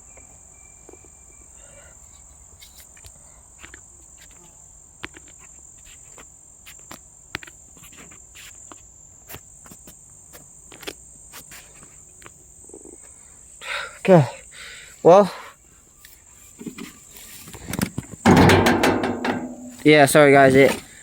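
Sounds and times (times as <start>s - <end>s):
insects chirring: 0.0s - 21.0s
light clicks and knocks: 17.6s - 19.9s.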